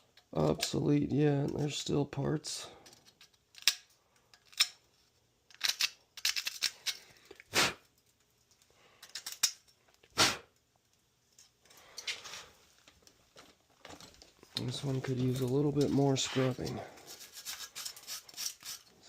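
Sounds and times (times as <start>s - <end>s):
bristle brush scrubbing metal: 14.7s - 18.9s.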